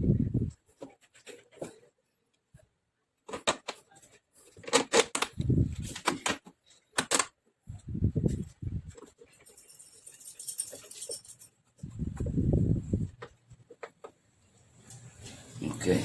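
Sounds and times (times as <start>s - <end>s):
metal and plastic parts clicking: 3.3s - 7.4s.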